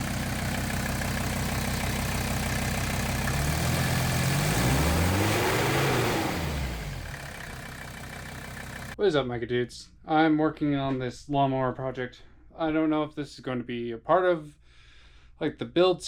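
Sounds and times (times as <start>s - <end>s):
lawn mower engine running: 0.0s - 9.0s.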